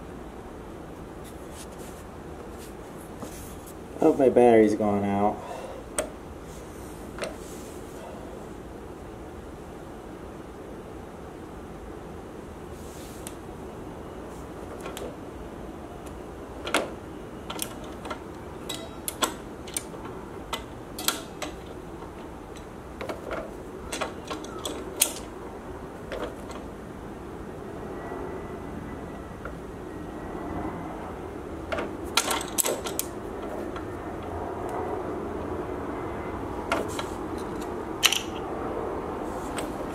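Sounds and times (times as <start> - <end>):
steady low hum: 0.0 - 39.9
hard objects clicking and knocking: 36.7 - 38.5.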